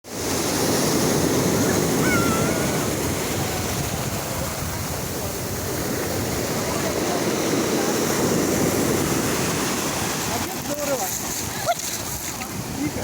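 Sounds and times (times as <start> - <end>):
sea surf washing ashore: 0.0 - 13.0.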